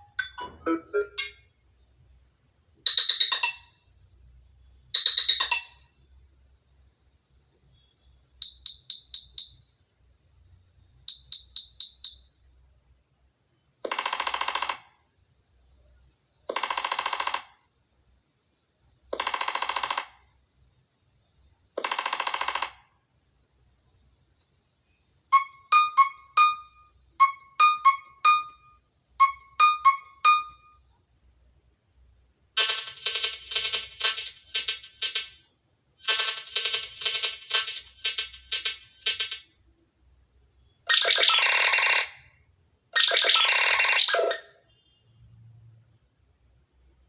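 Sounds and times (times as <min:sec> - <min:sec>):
high beeps: 0:08.4 - 0:09.9, 0:11.1 - 0:12.5.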